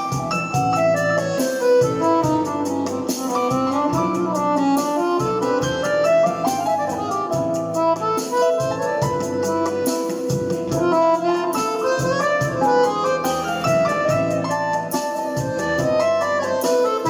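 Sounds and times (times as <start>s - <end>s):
accordion melody: 0.0s - 17.0s
electronic drum beat: 0.0s - 17.0s
bass line: 0.1s - 17.0s.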